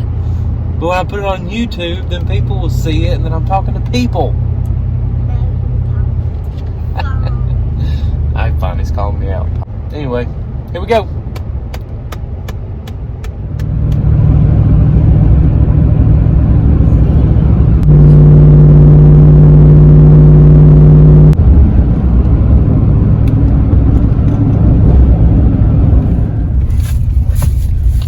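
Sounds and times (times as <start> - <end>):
vehicle engine running: 0.0 - 28.0.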